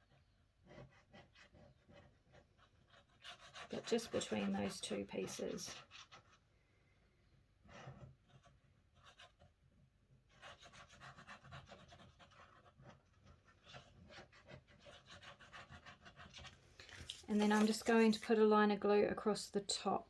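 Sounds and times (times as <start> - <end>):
scratchy rubbing on paper: 0.0 - 6.5, 7.6 - 9.6, 10.3 - 18.4.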